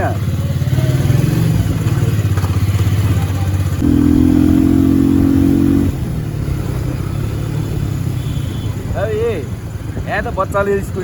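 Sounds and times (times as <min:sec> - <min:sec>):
motorcycle engine running: 0:00.0 - 0:10.0
loud steady tone: 0:03.8 - 0:06.0.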